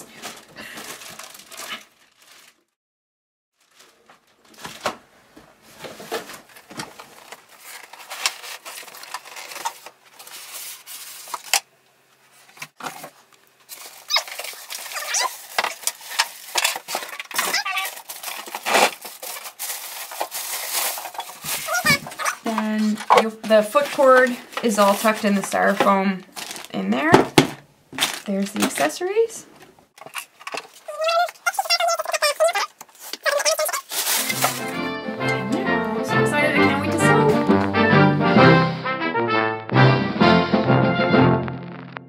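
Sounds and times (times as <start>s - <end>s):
styrofoam packing handled: 0.1s - 2.7s, 3.6s - 11.7s, 12.3s - 29.0s, 30.0s - 34.8s
cardboard box rustling and scraping: 12.4s - 25.8s.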